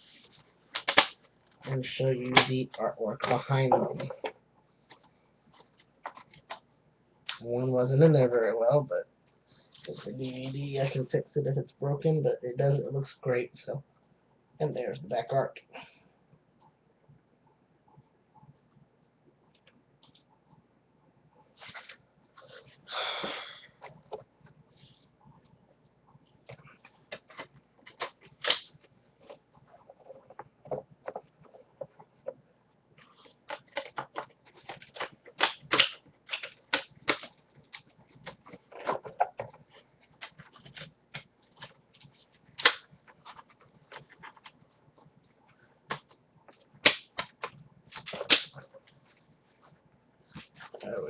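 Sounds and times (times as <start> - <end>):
plastic clicks and rustles: 33.0 - 49.7.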